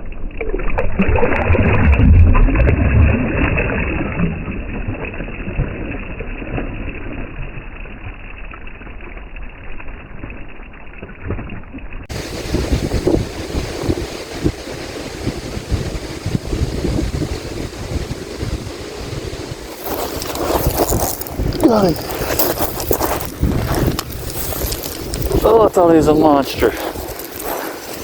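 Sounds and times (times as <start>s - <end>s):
waves lapping: 11.2s - 28.0s
wind buffeting microphone: 12.1s - 28.0s.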